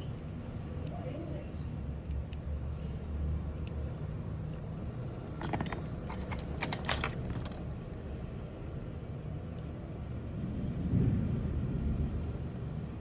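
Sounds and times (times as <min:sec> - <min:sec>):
metallic clinks and jingles: 0:05.4 - 0:07.6.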